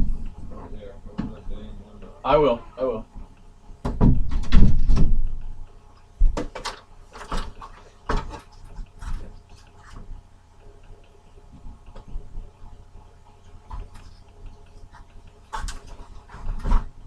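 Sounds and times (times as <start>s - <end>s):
light knocks and clatters: 3.1s - 10.2s.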